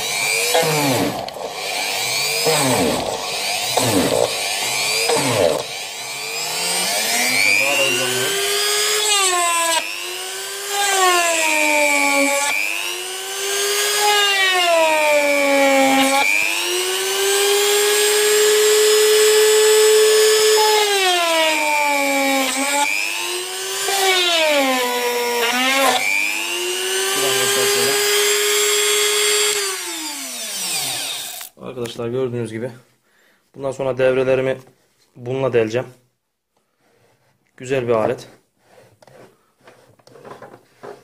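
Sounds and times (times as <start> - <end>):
rotary tool whining: 0.0 - 31.5.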